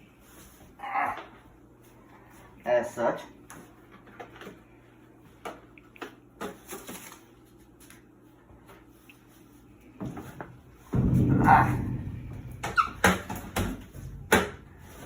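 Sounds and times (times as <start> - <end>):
low rumbling noise: 10.6 - 15.0.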